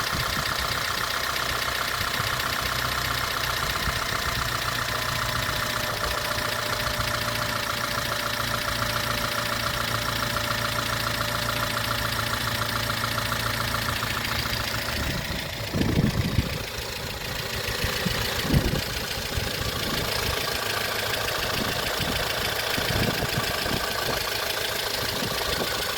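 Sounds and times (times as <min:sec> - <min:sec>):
car engine idling with ticking: 0:00.0 - 0:25.9
low bumps: 0:13.7 - 0:25.9.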